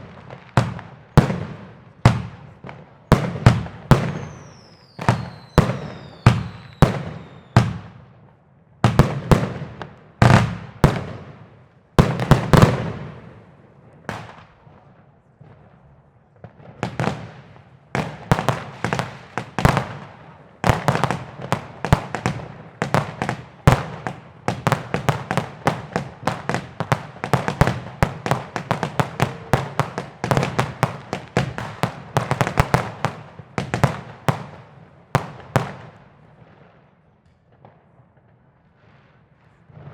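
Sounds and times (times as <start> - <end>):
fireworks banging: 0.0 - 8.0, 8.8 - 39.9
falling firework whistles: 4.0 - 7.7.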